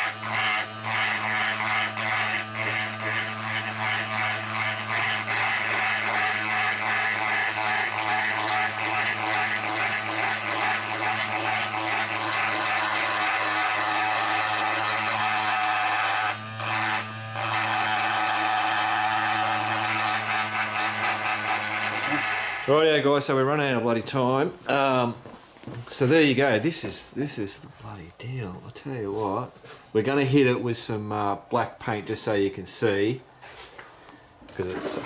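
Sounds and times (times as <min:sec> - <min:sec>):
electric power tool buzzing: 0:00.0 - 0:22.9.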